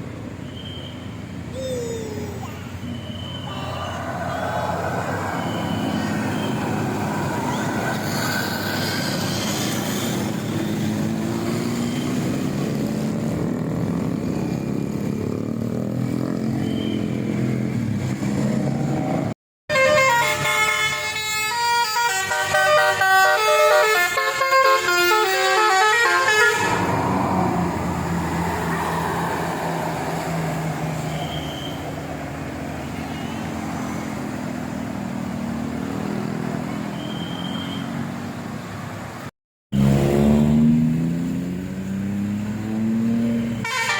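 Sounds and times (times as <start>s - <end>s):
bus engine and road noise: 0.0s - 43.9s
multi-tone bus horn melody: 19.7s - 27.0s, 43.6s - 43.9s.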